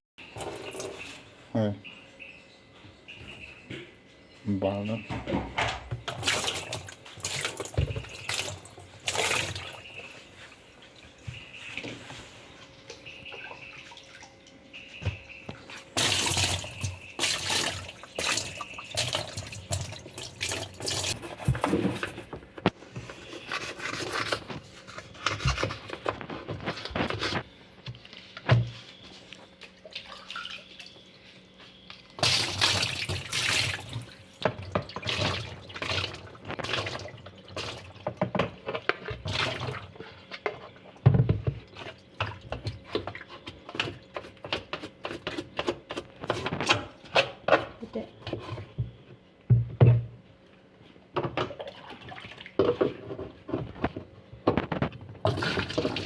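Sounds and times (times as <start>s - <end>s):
running water splashing: 15.6s - 21.2s.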